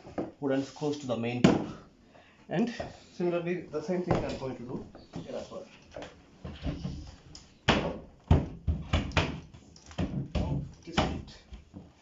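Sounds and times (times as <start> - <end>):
wooden panels knocking: 7.7 - 11.9.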